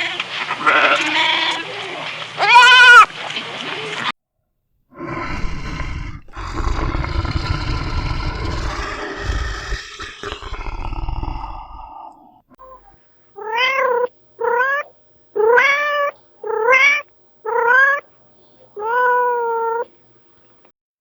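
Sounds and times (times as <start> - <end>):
cat meowing: 2.4 - 3.1, 13.4 - 18.1, 18.8 - 19.9.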